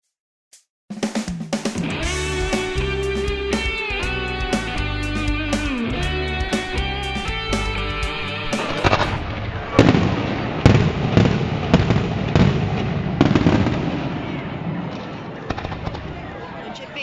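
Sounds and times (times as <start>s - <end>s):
guitar music: 1.8s - 9.2s
fireworks bangs with crackling: 8.8s - 16.3s.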